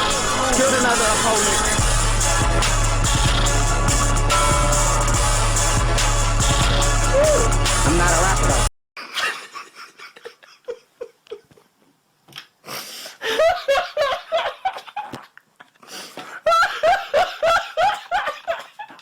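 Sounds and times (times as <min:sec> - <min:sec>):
hearty laughter: 0:09.0 - 0:11.8, 0:13.2 - 0:19.0.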